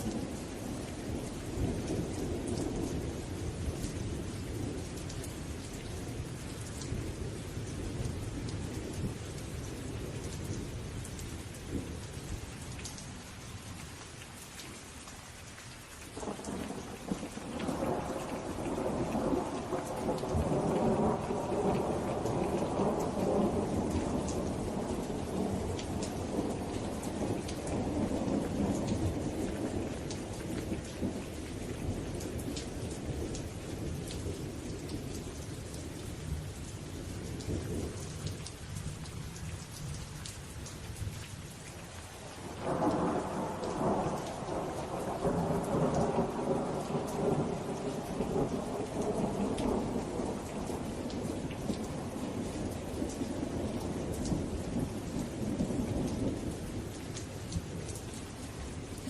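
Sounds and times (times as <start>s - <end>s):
steady rain: 0.0s - 59.0s
rolling thunder: 16.2s - 35.2s, 42.6s - 56.8s.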